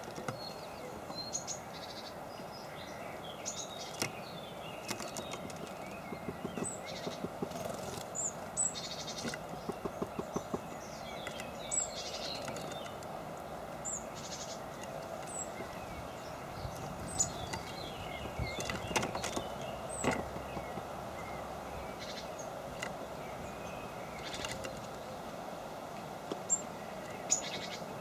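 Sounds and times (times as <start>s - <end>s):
small birds chirping: 0.0s - 28.0s
steady outdoor background hum: 0.0s - 28.0s.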